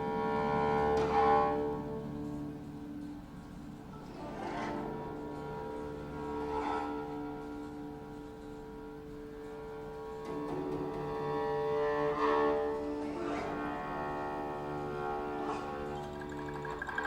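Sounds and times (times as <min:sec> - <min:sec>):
zither ensemble bowed tones: 0:00.0 - 0:17.0
sweeping zither glides: 0:11.3 - 0:17.0.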